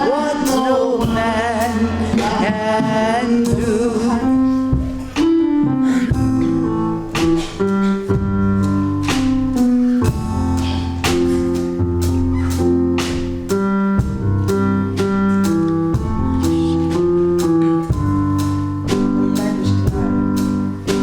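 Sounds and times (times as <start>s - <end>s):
bass line: 0.0s - 21.0s
keyboard chords: 0.0s - 21.0s
percussive hits: 6.1s - 21.0s.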